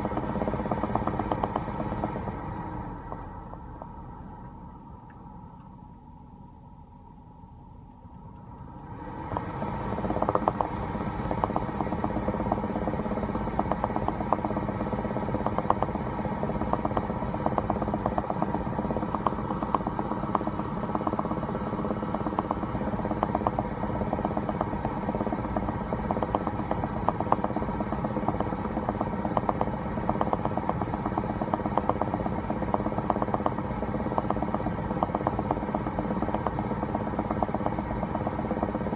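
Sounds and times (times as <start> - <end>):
rapid popping clicks: 0.0 - 3.9, 8.4 - 38.9
car driving drone: 0.0 - 5.4, 8.4 - 38.9.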